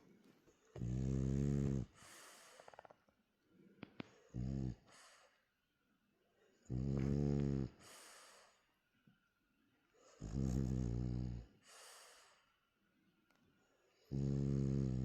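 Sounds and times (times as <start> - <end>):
dog snoring: 0.7 - 2.9, 4.1 - 5.2, 6.6 - 8.4, 10.0 - 12.3, 14.0 - 15.0.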